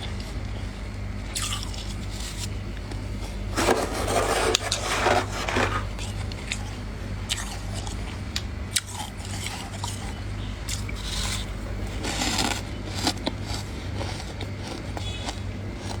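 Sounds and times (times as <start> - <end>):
steady low hum: 0.0 - 16.0
frost being chewed crunching: 1.3 - 16.0.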